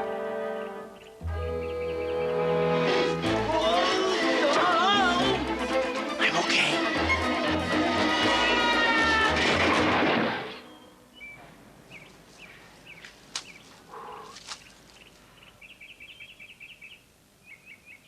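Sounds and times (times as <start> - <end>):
faint outdoor ambience: 0.0 - 18.0
high bird chirps: 10.6 - 14.3.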